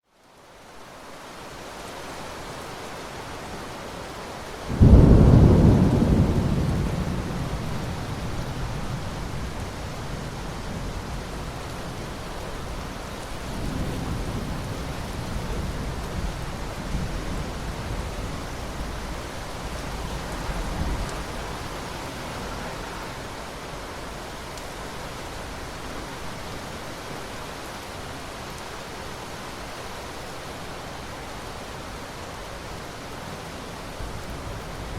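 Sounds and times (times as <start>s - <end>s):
steady rain hissing: 0.0s - 34.9s
thunder rumbling: 4.7s - 22.5s.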